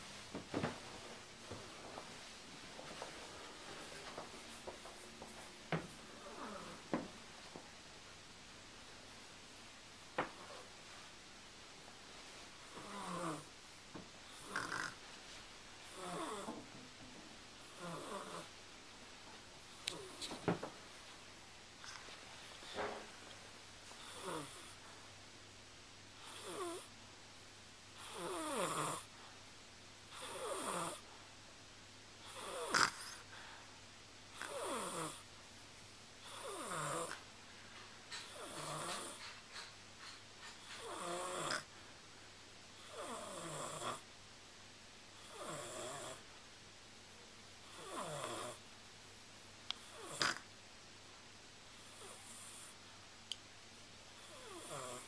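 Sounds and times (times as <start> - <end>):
person snoring: 6.1 - 6.8, 12.6 - 13.5, 17.7 - 18.5, 24.0 - 24.8, 28.0 - 29.1, 32.2 - 33.2, 34.4 - 35.2, 36.2 - 37.2, 38.2 - 39.2, 40.8 - 41.7, 42.8 - 44.0, 49.8 - 50.4, 54.2 - 55.0.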